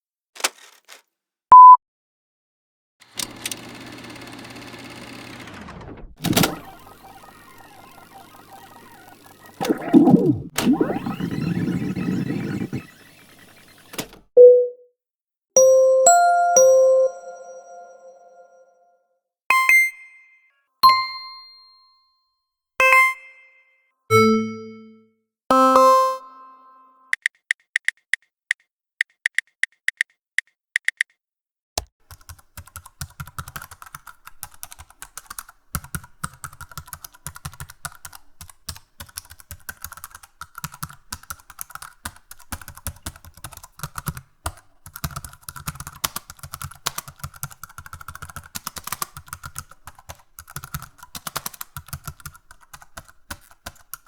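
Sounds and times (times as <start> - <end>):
rapid keyboard typing: 6.2 - 14.0, 32.0 - 54.0
chime-like dings: 15.6 - 18.7, 19.5 - 22.2, 22.8 - 27.0
evenly spaced ticks: 27.1 - 31.1.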